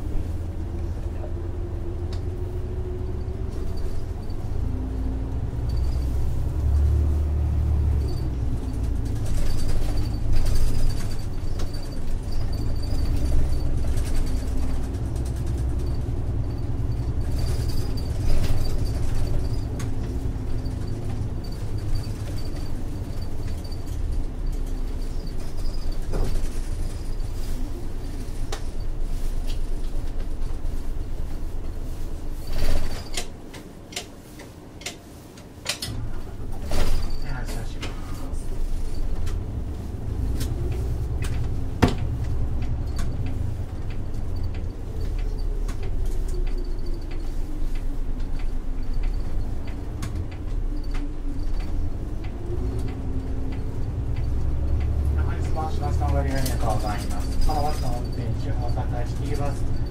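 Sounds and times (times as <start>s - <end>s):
bus diesel engine rumbling: 0.0s - 59.9s
sharp knocks and rattles: 8.0s - 27.3s.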